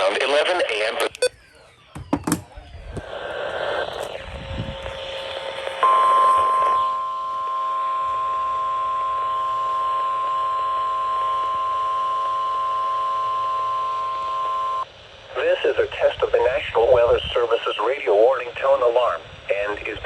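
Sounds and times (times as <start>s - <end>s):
radio hiss: 0.0s - 7.0s, 13.2s - 20.0s
steady alarm tone: 1.2s - 14.8s.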